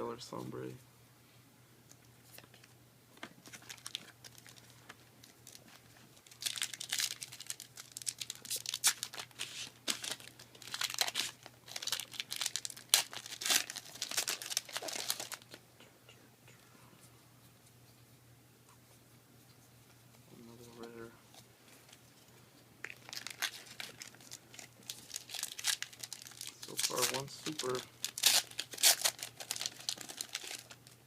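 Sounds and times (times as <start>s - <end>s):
wrapper crinkling and tearing: 3.4s - 15.6s, 22.8s - 31.0s.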